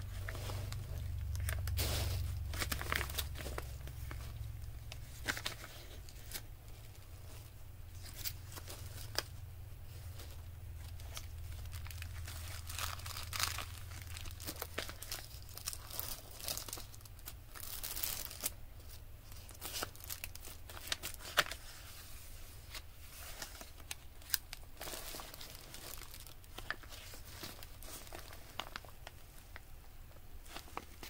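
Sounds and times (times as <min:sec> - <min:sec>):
low steady hum: 0:00.0 - 0:31.0
paper rustling and crinkling: 0:00.0 - 0:31.0.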